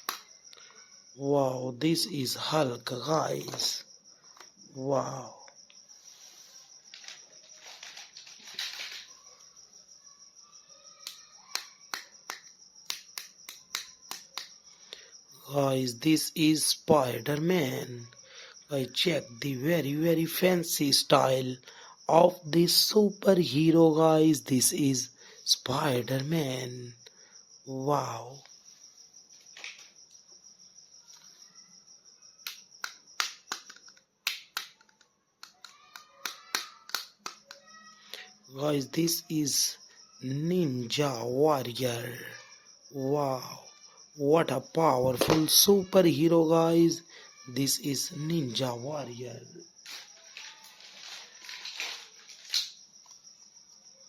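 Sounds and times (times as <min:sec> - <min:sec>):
packaging rustle: 0:06.9 - 0:09.1, 0:49.9 - 0:52.8
plastic clicks of toy figures: 0:06.9 - 0:09.1, 0:32.5 - 0:37.6.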